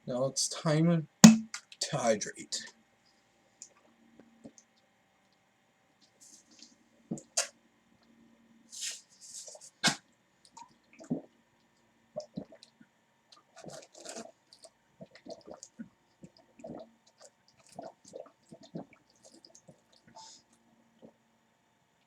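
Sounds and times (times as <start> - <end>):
sharp click: 1.2 - 1.6
person sucking and gulping water: 11.0 - 11.4, 12.2 - 12.8, 13.4 - 20.2.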